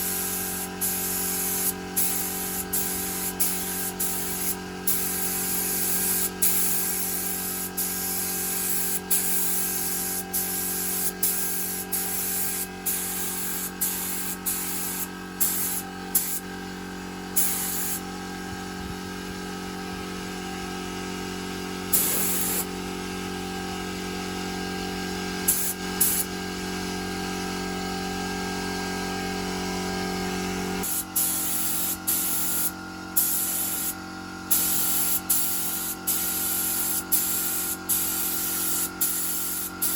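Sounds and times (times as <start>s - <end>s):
air spray gun hissing: 0.0s - 16.6s, 17.3s - 18.0s, 21.9s - 22.8s, 25.5s - 26.3s, 30.8s - 39.9s
motor humming: 0.0s - 20.6s.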